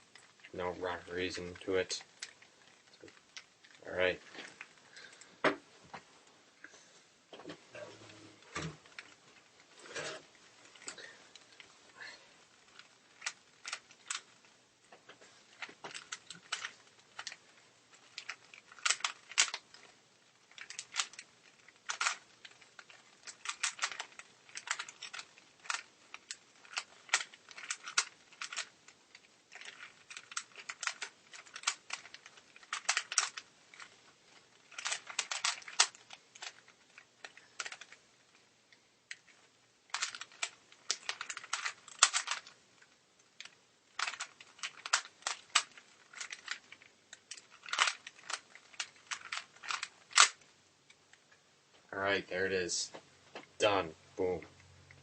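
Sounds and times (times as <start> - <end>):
plastic puzzle cube clicking: 12.5 - 14.5, 15.5 - 38.5, 39.1 - 51.3.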